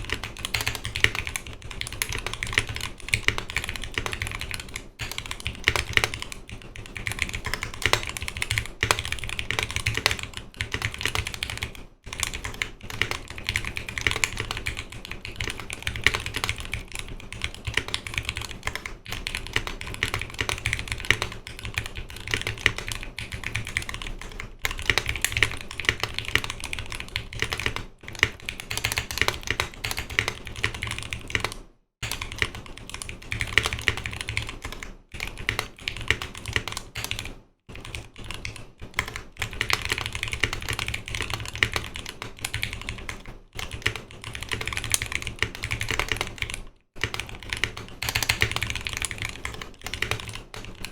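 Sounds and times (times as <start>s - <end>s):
fast typing on mechanical keyboard: 0.0s - 50.9s.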